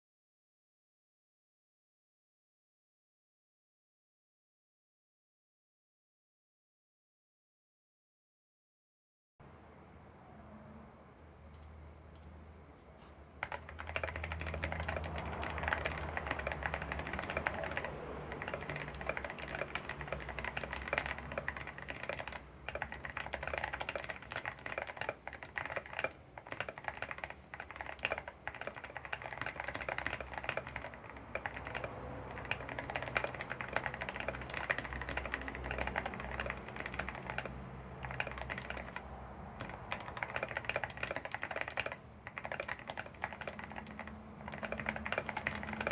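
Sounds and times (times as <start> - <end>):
mechanical keyboard key clicks: 13.4 - 45.9.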